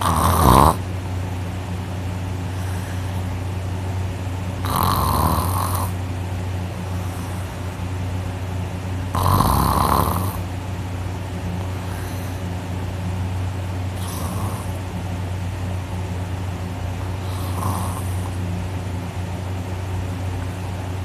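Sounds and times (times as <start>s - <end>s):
loud rasping snores: 0.0s - 0.8s, 4.6s - 6.0s, 9.1s - 10.4s, 11.8s - 12.4s, 13.9s - 14.8s, 17.0s - 18.4s
steady low hum: 0.0s - 21.0s.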